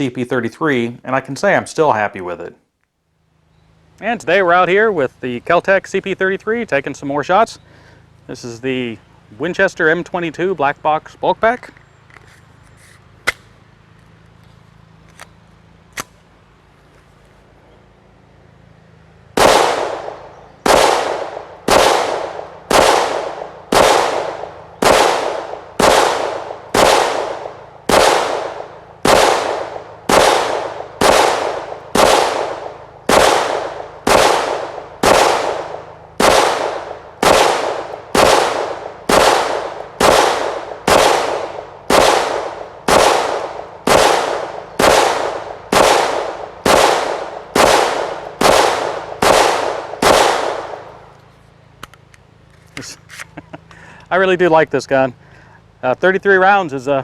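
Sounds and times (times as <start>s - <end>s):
pistol shots echoing: 19.4s - 51.1s.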